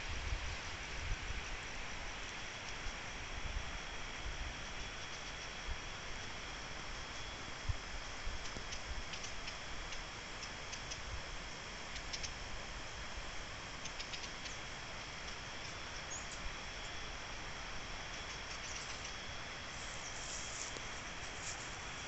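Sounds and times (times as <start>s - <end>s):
high insect drone: 0.0s - 22.0s.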